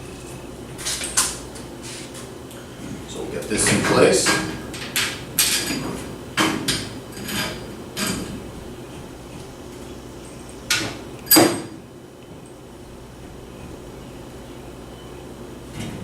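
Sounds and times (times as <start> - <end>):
metal parts clanking and knocking: 3.6 - 8.4.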